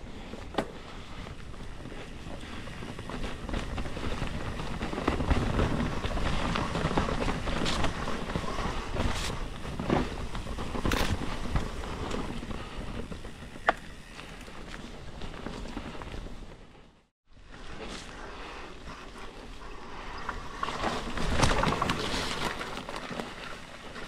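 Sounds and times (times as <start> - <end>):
bike tyre rumble: 0.0 - 24.0
knocks and rattles over rocks: 20.6 - 24.0.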